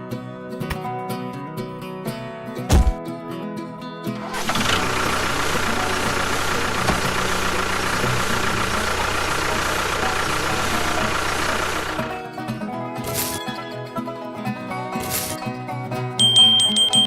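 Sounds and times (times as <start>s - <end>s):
engine idling: 4.2s - 12.2s.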